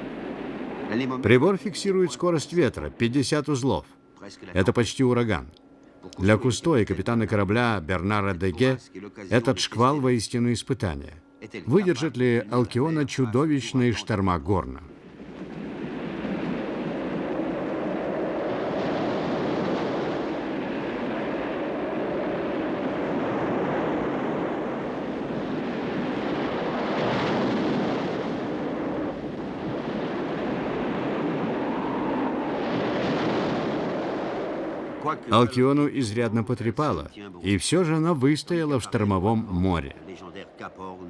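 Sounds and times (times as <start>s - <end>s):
strong wind roaring: 0.0s - 1.2s, 15.0s - 35.8s
heavy seas rushing: 0.0s - 3.6s, 11.7s - 37.1s.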